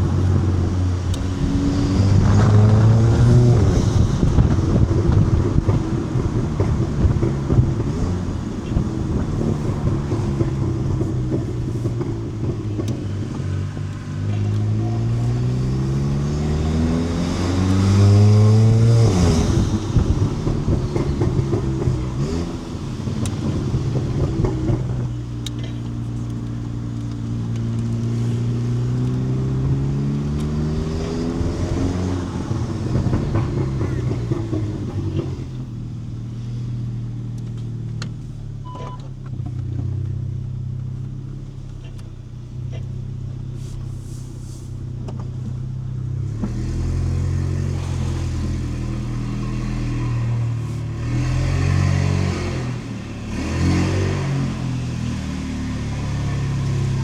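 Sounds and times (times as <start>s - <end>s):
car engine accelerating: 0.0s - 57.0s
short high beep: 38.6s - 39.1s.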